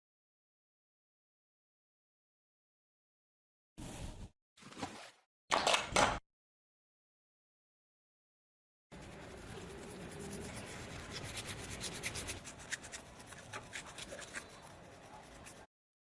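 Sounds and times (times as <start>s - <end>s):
rubbing and scraping on a surface: 8.9s - 15.7s.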